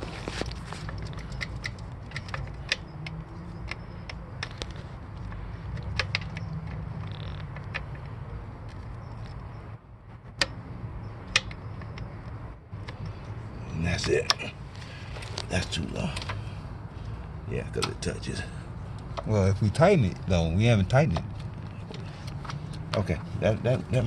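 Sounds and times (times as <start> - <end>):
light metal clicks and taps: 0.8 - 9.4.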